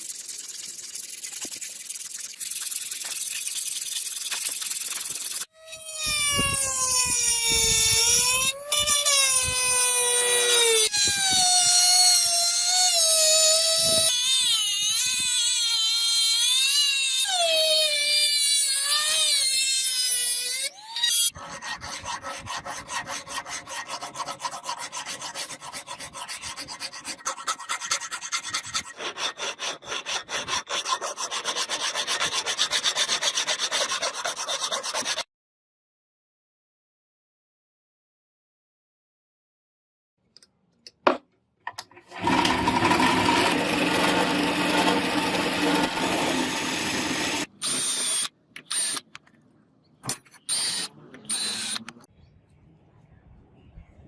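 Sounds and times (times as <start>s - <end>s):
rasping strokes on steel: 18.3s - 35.3s, 42.1s - 47.5s.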